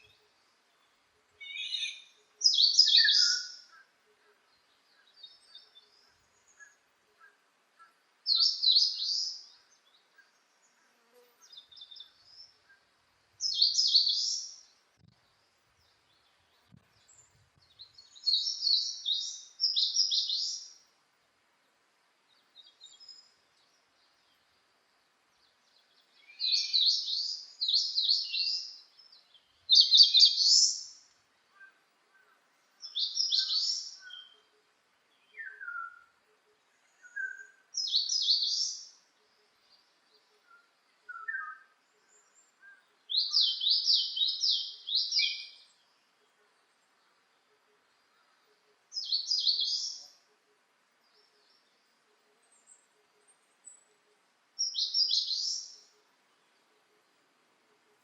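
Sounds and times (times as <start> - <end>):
faint low bird chirps: 0.0 - 20.9
songbird warbling: 1.4 - 3.9, 54.6 - 55.9.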